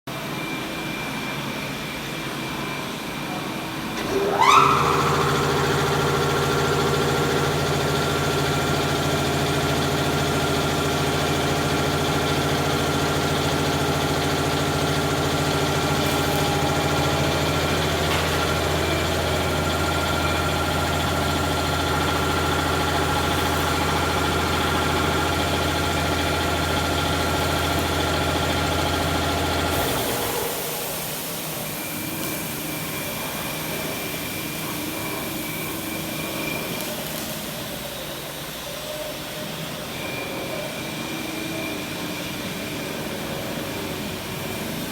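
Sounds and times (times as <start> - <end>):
grinder motors humming: 3.9 - 37.8.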